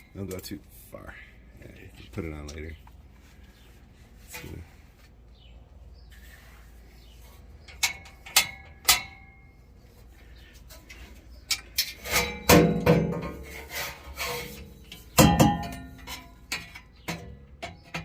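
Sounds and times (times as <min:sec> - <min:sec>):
metal exhaust pipe clanking: 0:07.6 - 0:09.7, 0:10.7 - 0:18.0.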